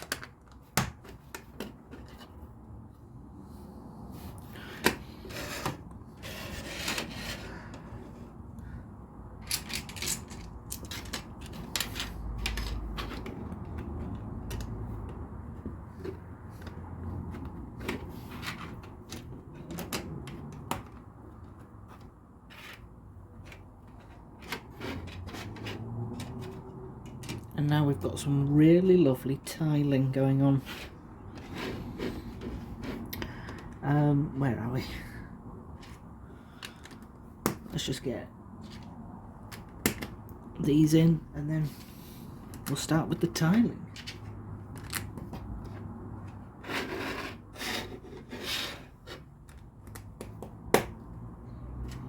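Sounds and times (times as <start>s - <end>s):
plastic bricks clicking and clattering: 9.4s - 14.7s.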